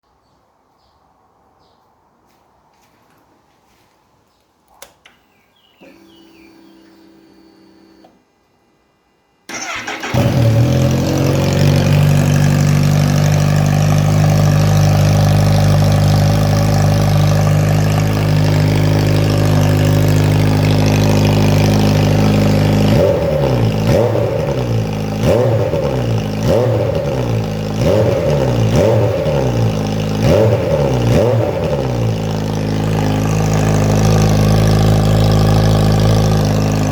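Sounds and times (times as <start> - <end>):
motorcycle engine idling and revving: 9.5 - 36.9.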